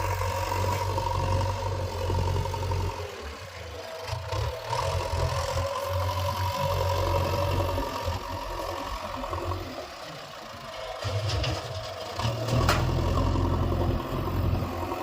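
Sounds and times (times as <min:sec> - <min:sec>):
diesel digger engine droning: 0:00.0 - 0:15.0
steady whine: 0:03.2 - 0:11.8.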